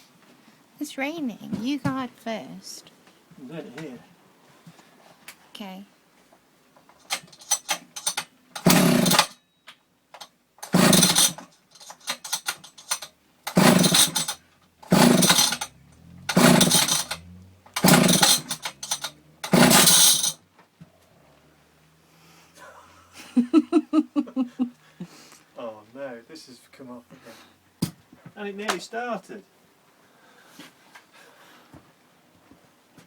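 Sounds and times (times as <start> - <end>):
chainsaw recoil starter cranking: 7.0 - 9.4, 10.6 - 20.4.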